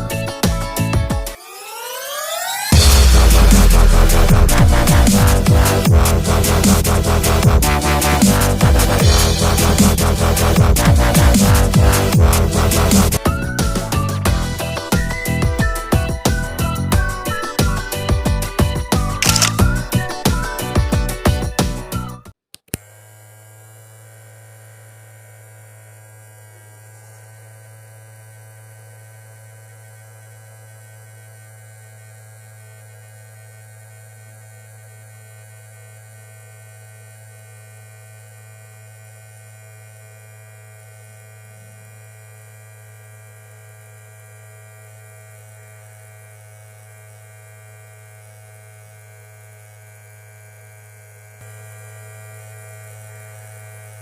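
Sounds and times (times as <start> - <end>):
small electric motor humming: 19.2 - 20.1, 22.8 - 54.0.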